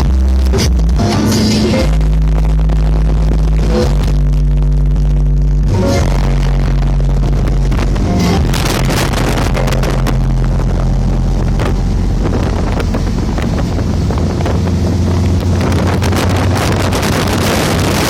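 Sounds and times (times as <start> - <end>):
car engine running: 0.0 - 18.0
wind buffeting microphone: 7.4 - 18.0.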